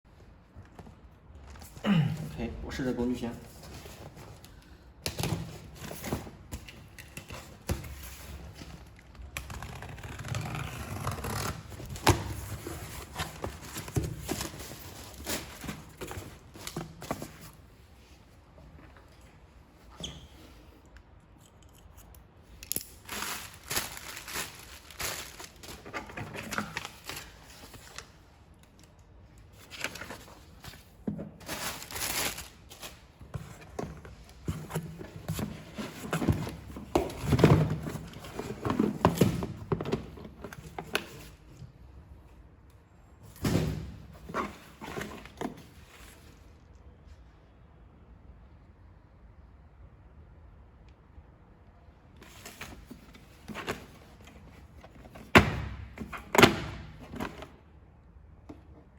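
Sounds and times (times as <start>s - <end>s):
packaging rustling: 22.9s - 28.2s, 29.5s - 37.2s.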